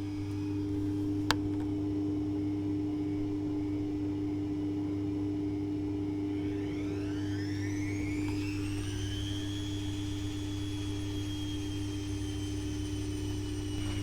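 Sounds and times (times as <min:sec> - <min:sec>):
drum motor whine: 0:00.0 - 0:02.5, 0:05.8 - 0:14.0
washing machine humming: 0:00.0 - 0:14.0.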